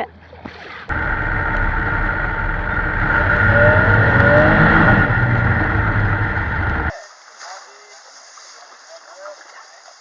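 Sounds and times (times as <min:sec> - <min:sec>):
loud engine drone: 0:00.9 - 0:06.9.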